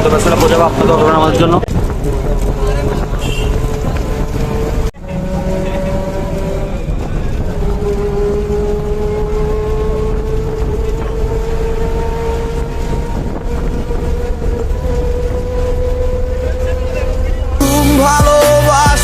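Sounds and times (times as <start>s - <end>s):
bus engine and road rumble: 0.0s - 19.0s.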